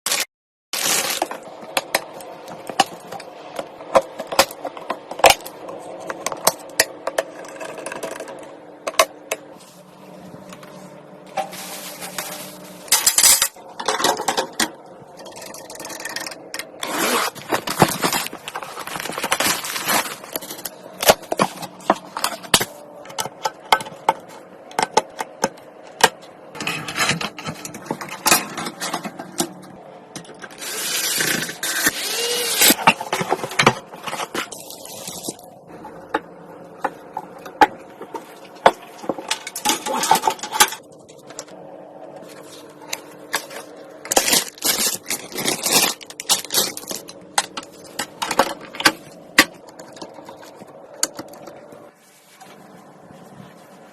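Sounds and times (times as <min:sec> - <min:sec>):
faint steady hum: 0:00.8 - 0:53.9
computer parts clicking and rattling: 0:12.9 - 0:29.6.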